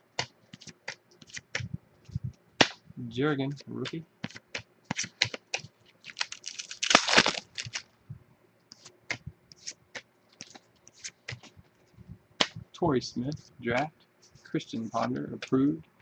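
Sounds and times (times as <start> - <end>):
cards rustling scrape: 4.2 - 7.8, 8.7 - 11.6.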